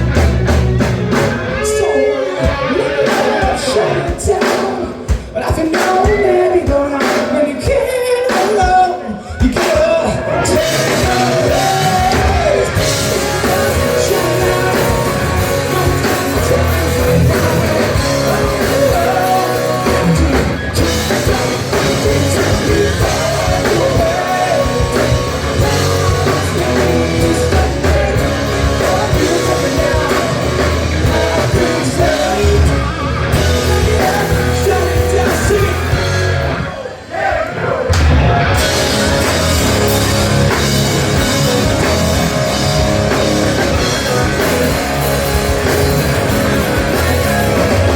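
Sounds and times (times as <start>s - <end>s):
rock band playing live: 0.0s - 47.9s
person singing: 1.5s - 36.2s.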